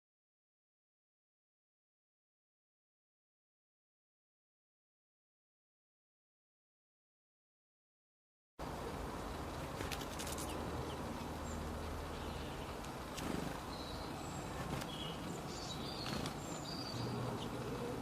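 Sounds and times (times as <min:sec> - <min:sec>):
steady background hiss: 0:08.6 - 0:18.0.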